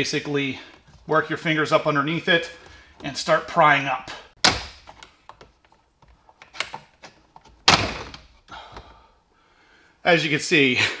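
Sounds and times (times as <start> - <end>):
plastic panel clicks and rattles: 4.4 - 8.4.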